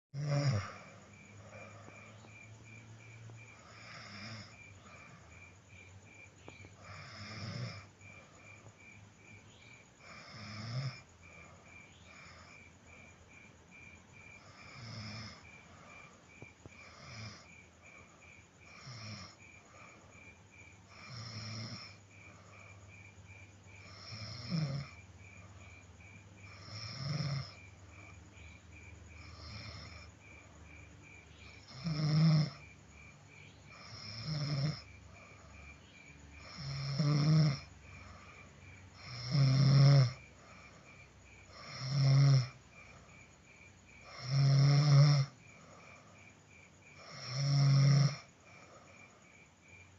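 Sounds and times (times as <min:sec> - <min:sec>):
person snoring: 0:00.2 - 0:02.5, 0:03.5 - 0:05.4, 0:06.7 - 0:08.5, 0:10.0 - 0:12.6, 0:14.4 - 0:17.6, 0:18.6 - 0:20.0, 0:20.9 - 0:22.8, 0:23.8 - 0:25.0, 0:26.4 - 0:28.2, 0:29.2 - 0:30.2, 0:31.4 - 0:32.7, 0:33.7 - 0:35.5, 0:36.4 - 0:40.8, 0:41.5 - 0:43.0, 0:44.0 - 0:46.1, 0:46.9 - 0:49.2.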